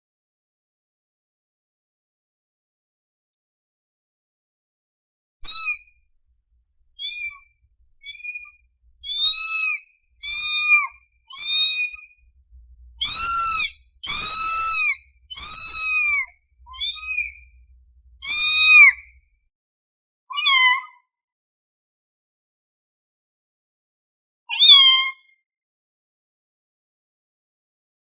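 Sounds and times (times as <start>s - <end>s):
kitten mewing: 5.4s - 5.8s, 7.0s - 7.4s, 8.0s - 12.1s, 13.0s - 17.5s, 18.2s - 19.0s.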